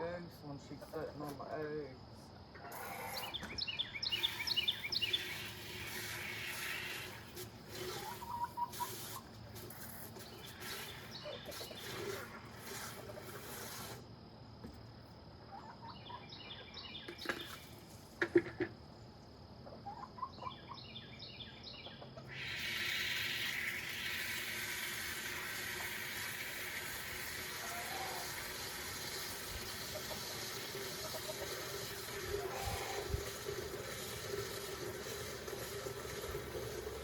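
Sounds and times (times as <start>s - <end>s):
farm birds chirping: 0.0s - 13.6s, 15.2s - 24.4s, 27.3s - 37.0s
steady rushing hiss: 4.1s - 14.2s, 22.3s - 37.0s.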